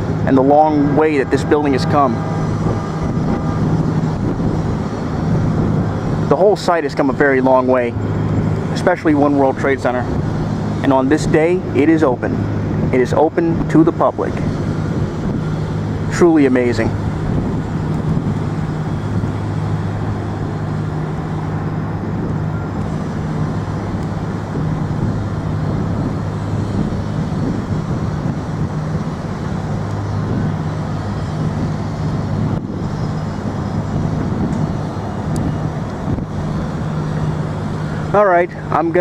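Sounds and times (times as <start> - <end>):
low engine hum: 0.0 - 39.0
street traffic: 0.0 - 39.0.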